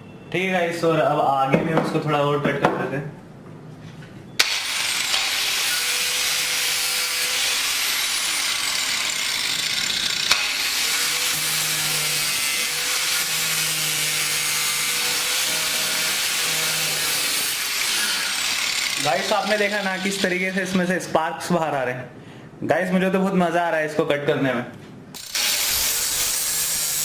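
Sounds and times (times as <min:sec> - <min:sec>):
angle grinder cutting metal: 0:04.4 - 0:21.0, 0:25.2 - 0:27.0.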